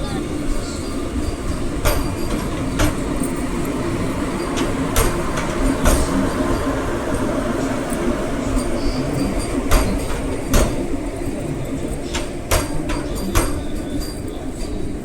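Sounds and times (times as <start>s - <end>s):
train rumbling: 0.0s - 15.0s
sharp clicks and knocks: 1.5s - 3.8s, 4.4s - 6.7s, 9.2s - 11.0s, 12.0s - 14.2s.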